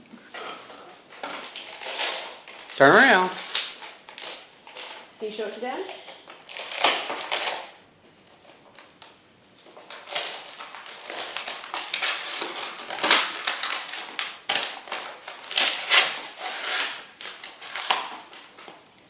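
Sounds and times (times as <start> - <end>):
wrapping paper tearing and crumpling: 1.3 - 5.1, 5.9 - 8.9, 9.7 - 18.8.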